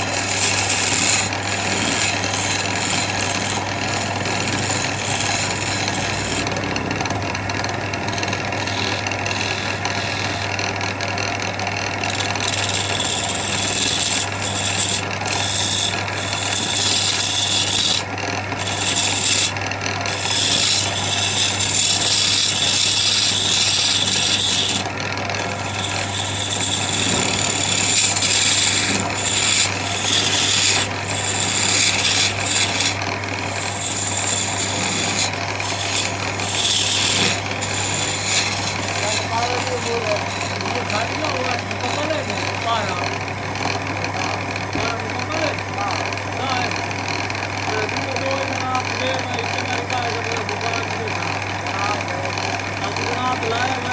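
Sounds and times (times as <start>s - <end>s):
power tool sanding wood: 0.0s - 53.9s.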